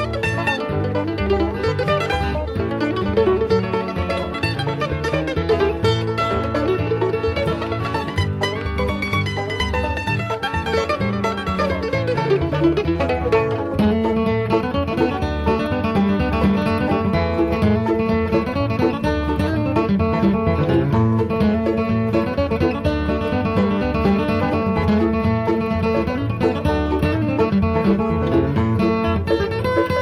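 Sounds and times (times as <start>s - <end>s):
bluegrass banjo and guitar music: 0.0s - 30.0s.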